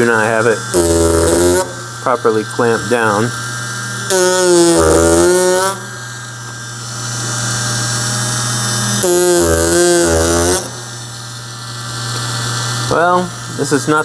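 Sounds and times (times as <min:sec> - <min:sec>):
chisel buzzing into wood: 0:00.0 - 0:14.0
power carver motor hum: 0:00.0 - 0:14.0.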